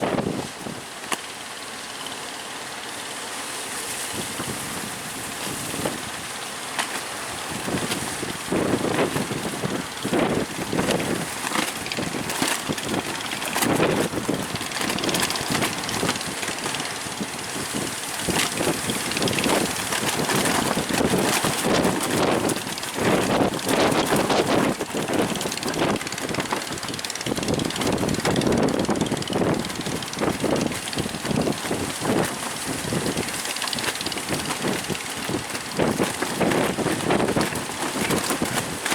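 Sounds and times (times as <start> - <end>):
wind buffeting microphone: 0.0 - 1.0, 4.1 - 6.4, 7.2 - 38.9
sea surf rushing: 0.0 - 38.9.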